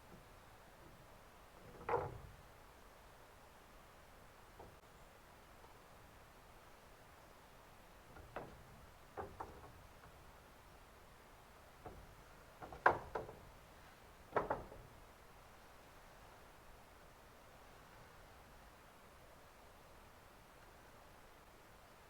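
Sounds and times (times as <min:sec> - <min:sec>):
carpentry knocks and taps: 0:11.8 - 0:13.4, 0:14.3 - 0:14.8.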